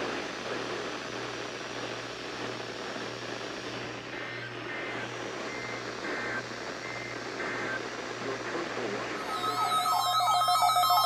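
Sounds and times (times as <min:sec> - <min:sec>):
faint short beeping tones: 0:09.2 - 0:11.0.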